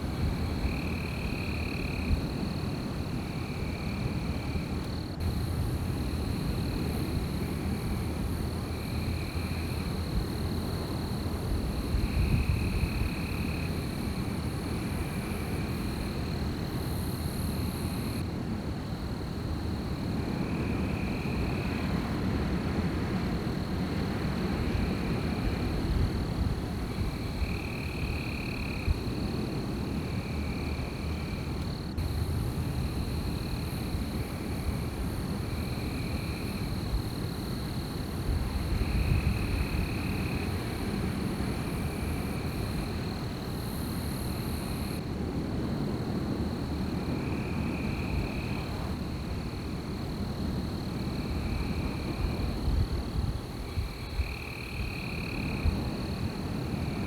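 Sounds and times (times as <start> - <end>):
wind rumble: 0.0 - 57.0
frogs or insects calling: 26.8 - 45.1, 45.7 - 57.0.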